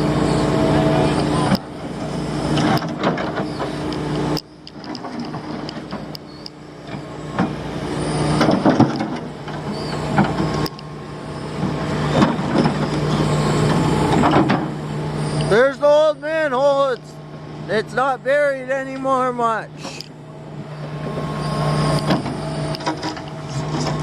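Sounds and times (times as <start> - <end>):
heavy diesel engine running: 0.0 - 24.0
knocks and clanks: 2.6 - 3.8, 6.9 - 7.6, 8.3 - 10.8, 11.6 - 14.8, 22.0 - 24.0.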